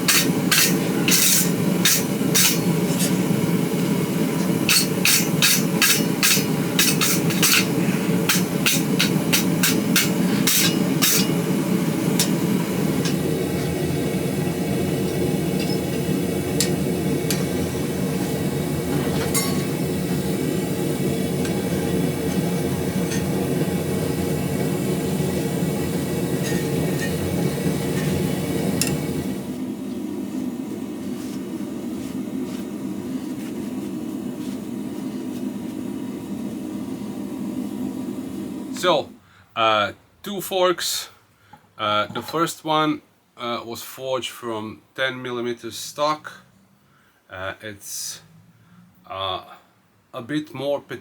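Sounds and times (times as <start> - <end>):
hammer striking steel on anvil: 0.0 - 3.2, 4.7 - 11.5, 12.2 - 13.3, 19.3 - 19.8, 23.1 - 23.4, 26.4 - 28.2
steady low hum: 0.0 - 39.2.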